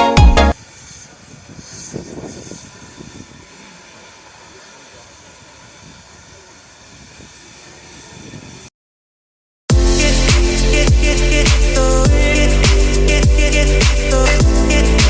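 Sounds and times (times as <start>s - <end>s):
steam hissing: 0.6s - 8.7s, 9.8s - 15.0s
low rumble: 9.7s - 15.0s.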